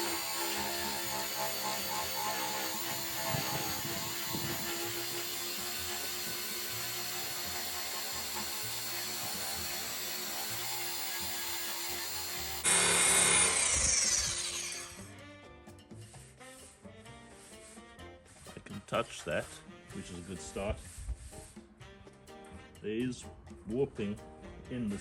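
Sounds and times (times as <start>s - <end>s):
electric drum sander on metal: 0.0s - 15.1s.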